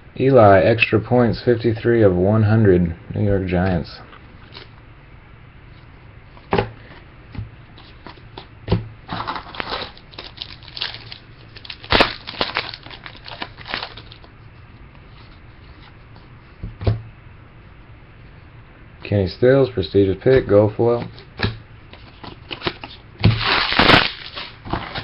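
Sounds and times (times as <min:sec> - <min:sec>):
wrapper crinkling and tearing: 0:09.1 - 0:14.3, 0:22.0 - 0:25.0.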